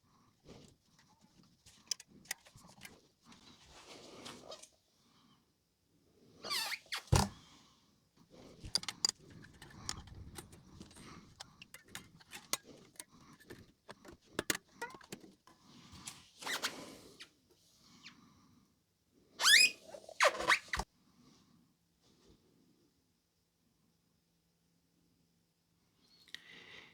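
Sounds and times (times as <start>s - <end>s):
guitar handling clicks and knocks: 1.7s - 3.0s, 8.6s - 15.5s
cloth squeaking on guitar: 8.7s - 15.3s.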